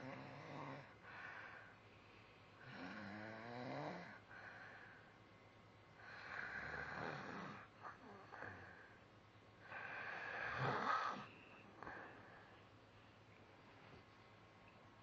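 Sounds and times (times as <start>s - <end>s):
person snoring: 0.0s - 1.0s, 2.6s - 4.3s, 6.0s - 8.9s, 9.6s - 12.3s.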